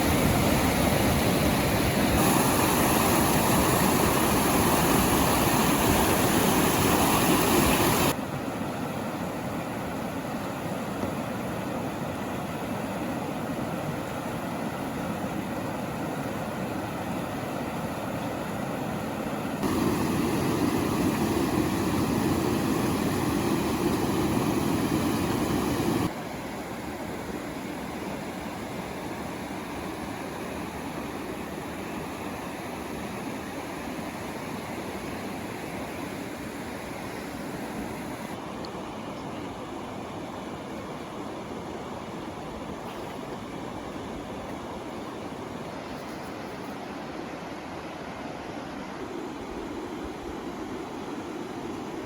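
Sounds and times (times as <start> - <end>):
river rapids rushing: 0.0 - 8.2, 19.6 - 26.2.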